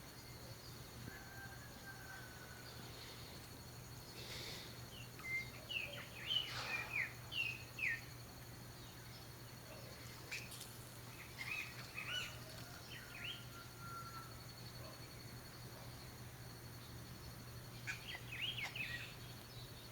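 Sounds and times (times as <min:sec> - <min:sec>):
orioles singing whistled notes: 0:04.6 - 0:14.4, 0:16.8 - 0:19.9.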